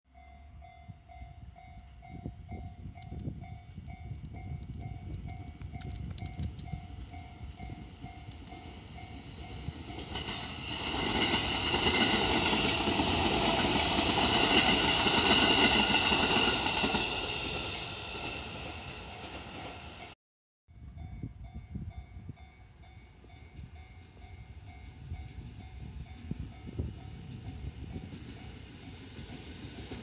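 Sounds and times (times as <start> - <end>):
train wheels rumbling on rails: 0.5 - 20.2, 21.1 - 30.0.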